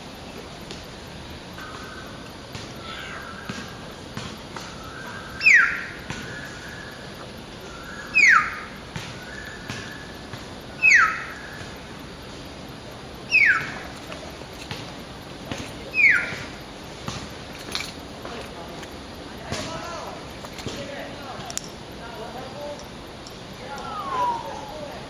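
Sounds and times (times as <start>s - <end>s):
myna sharp whistled calls: 4.6s - 11.8s, 13.3s - 13.9s, 15.9s - 16.5s, 23.8s - 25.0s
soft level whistled notes: 23.8s - 24.9s.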